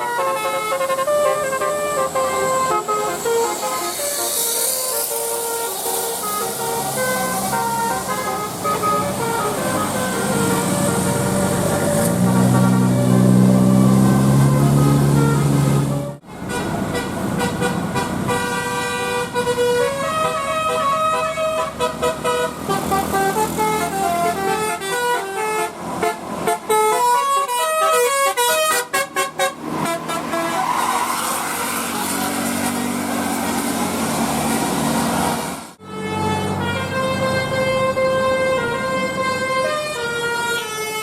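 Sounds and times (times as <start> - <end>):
multi-tone air horn tune: 0.0 - 34.6, 35.8 - 41.0
noisy wash of sound: 2.0 - 11.8.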